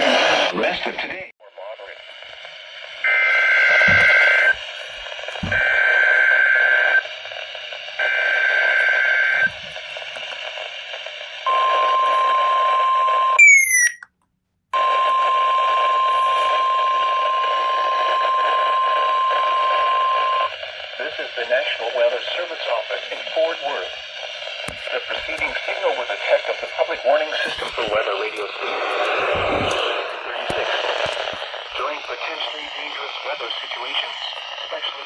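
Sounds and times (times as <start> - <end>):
steady alarm tone: 3.0 - 4.6, 13.4 - 14.0
digital data screech: 13.4 - 14.0
falling chirps: 13.4 - 14.0.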